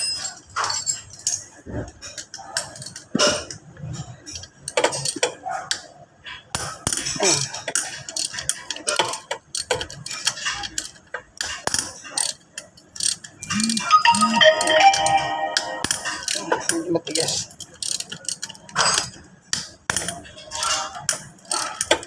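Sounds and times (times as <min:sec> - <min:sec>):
wrenches clanking on metal parts: 0:00.0 - 0:05.5, 0:06.6 - 0:14.4, 0:15.9 - 0:22.0
ringing tone: 0:13.6 - 0:16.4.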